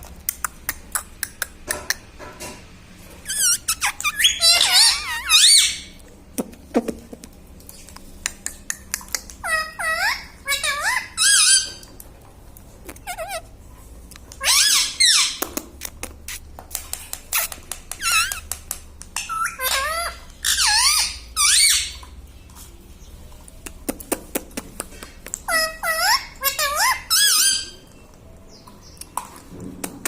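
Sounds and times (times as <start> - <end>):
parrot squeaky calls: 3.2 - 6.0, 9.4 - 11.9, 12.9 - 13.5, 14.4 - 15.5, 17.3 - 18.5, 19.2 - 22.1, 25.4 - 28.0.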